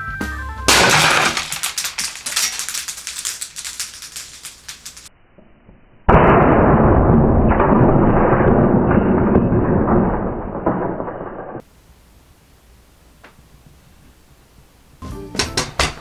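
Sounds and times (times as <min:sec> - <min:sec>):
pellet impacts rattling: 0:00.7 - 0:05.1.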